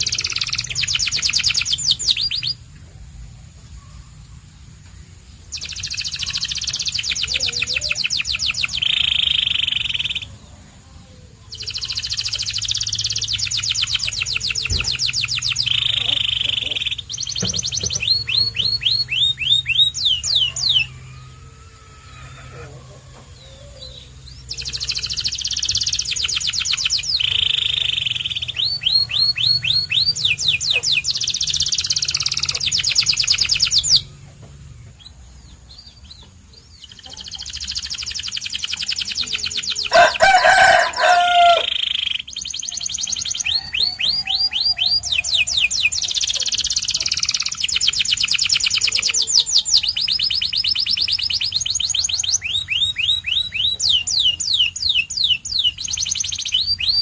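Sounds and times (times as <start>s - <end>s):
canary singing trills: 0.0s - 57.0s
loud low bird call: 39.7s - 42.2s.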